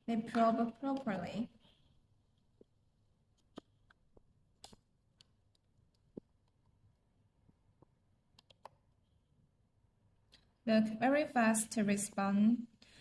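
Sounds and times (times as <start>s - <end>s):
test probes clicking and tapping: 2.6s - 6.7s.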